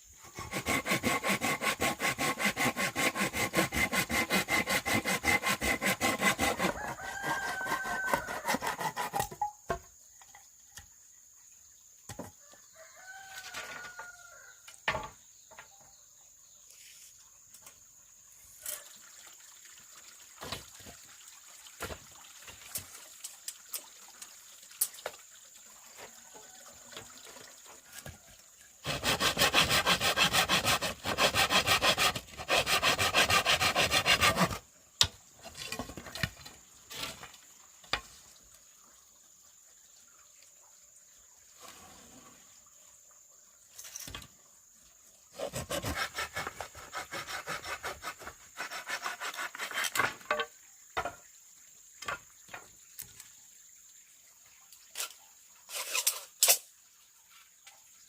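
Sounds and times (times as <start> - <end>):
hand saw cutting bamboo: 0.3 - 9.5, 28.8 - 34.6, 45.3 - 50.4
rooster crowing: 6.7 - 8.6, 12.7 - 14.6.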